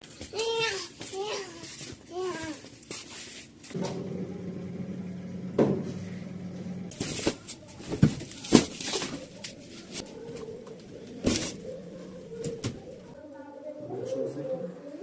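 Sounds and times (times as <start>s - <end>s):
steady low hum: 3.8s - 7.0s.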